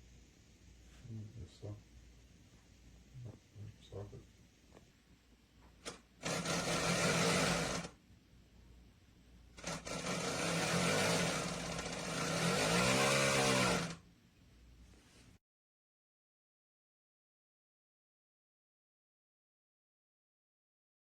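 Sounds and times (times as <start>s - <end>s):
duct fan motor hum: 5.9s - 8.0s, 9.5s - 14.0s.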